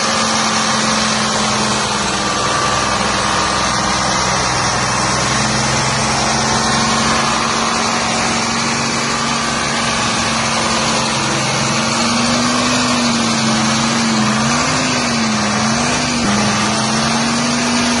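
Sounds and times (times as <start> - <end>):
pressure washer diesel engine: 0.0 - 18.0.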